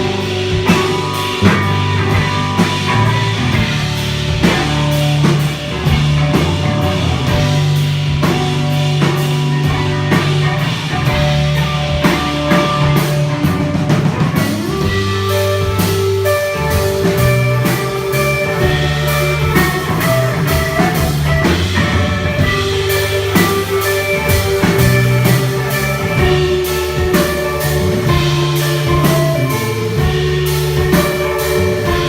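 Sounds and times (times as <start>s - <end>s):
drum kit beat: 0.0s - 32.0s
rock band playing live: 0.0s - 32.0s.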